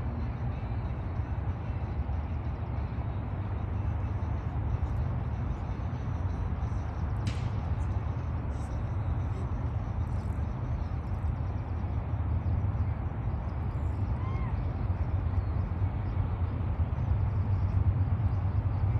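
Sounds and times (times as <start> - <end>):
low outdoor rumble: 0.0 - 18.9.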